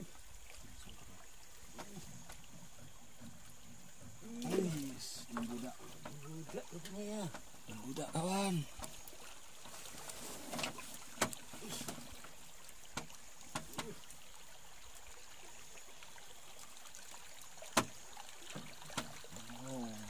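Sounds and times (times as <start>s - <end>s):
sharp clicks and knocks: 12.9s - 13.9s.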